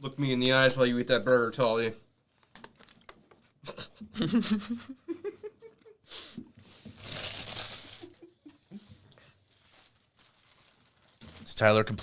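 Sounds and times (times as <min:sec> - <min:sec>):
wrappers crinkling and tearing: 0:06.9 - 0:08.2, 0:09.1 - 0:12.0.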